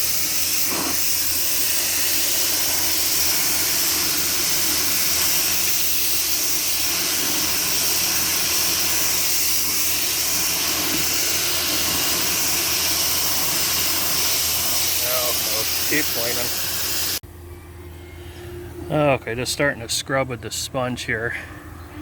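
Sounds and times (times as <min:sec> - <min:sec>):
high-pressure water spray hissing: 0:00.0 - 0:17.2
pressure washer motor hum: 0:00.0 - 0:17.2.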